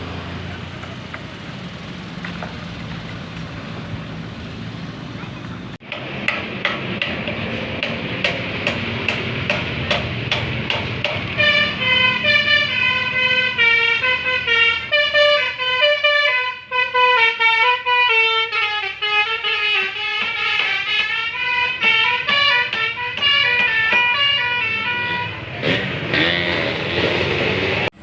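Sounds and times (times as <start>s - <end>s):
multi-tone bus horn melody: 11.3s - 27.9s.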